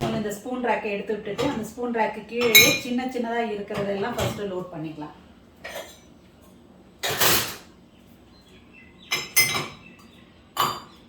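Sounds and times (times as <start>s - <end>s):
metal utensils clinking and clattering: 7.0s - 7.6s, 9.1s - 9.8s.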